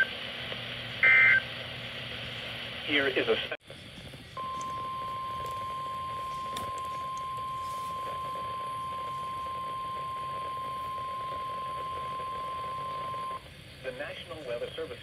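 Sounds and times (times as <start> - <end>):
steady alarm tone: 4.4 - 13.4.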